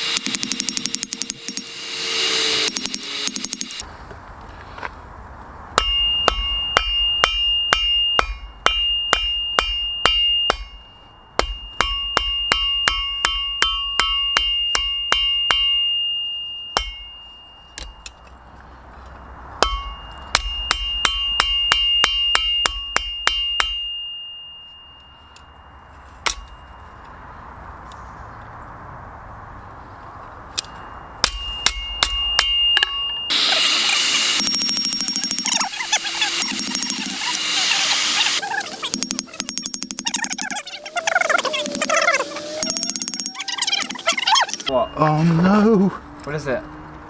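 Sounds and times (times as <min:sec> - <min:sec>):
hammer ringing on anvil: 0:00.0 - 0:03.8, 0:31.2 - 0:37.5.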